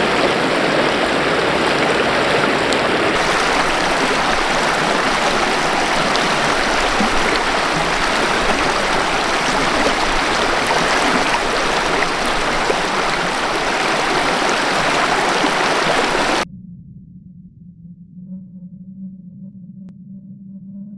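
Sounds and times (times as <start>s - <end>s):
river rushing over rocks: 0.0s - 16.4s.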